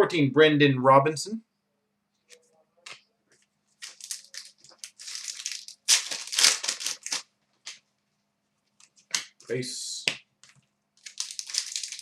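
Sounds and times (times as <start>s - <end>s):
card pack wrapper crinkling: 3.8s - 7.8s, 10.4s - 12.0s.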